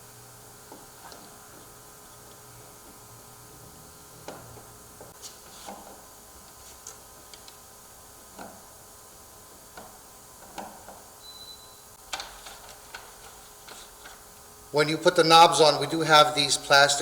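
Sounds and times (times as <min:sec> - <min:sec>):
faint high squeak: 0:11.2 - 0:11.8.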